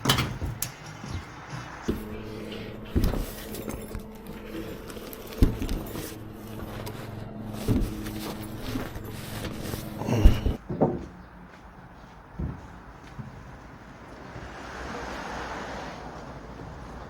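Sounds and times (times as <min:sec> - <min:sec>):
machine hum: 0:01.8 - 0:10.6.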